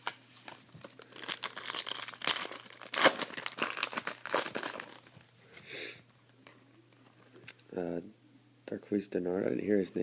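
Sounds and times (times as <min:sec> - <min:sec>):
foil wrapper crinkling: 0:00.0 - 0:05.2.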